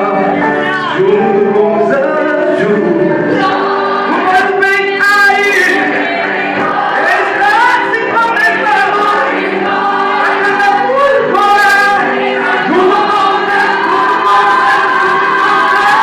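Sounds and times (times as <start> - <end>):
choir singing a slow gospel song: 3.2 - 16.0.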